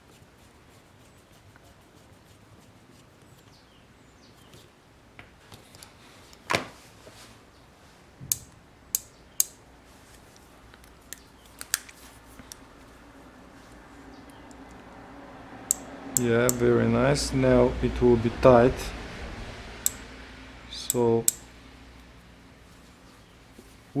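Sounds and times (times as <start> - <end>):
metallic clicks of multitool: 8.3 - 9.6, 10.8 - 12.6, 15.7 - 16.6, 19.8 - 20.0, 20.8 - 21.5.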